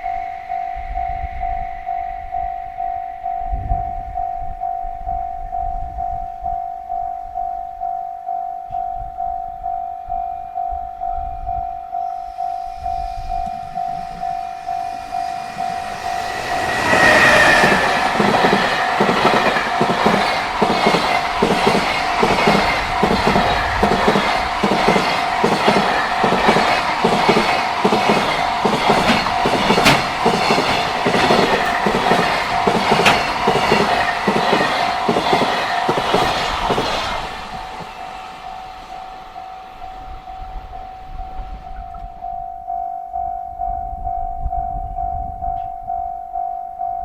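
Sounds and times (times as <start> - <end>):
level-crossing warning bell: 0.0 - 47.0
freight train rushing past: 11.0 - 42.3
wheels clattering over rail joints: 15.0 - 38.0.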